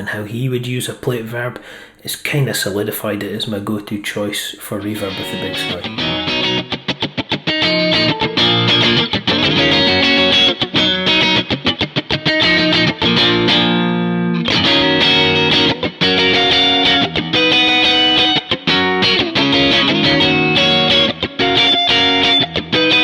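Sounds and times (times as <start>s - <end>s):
electric guitar funk chord stabs: 5.1s - 23.0s.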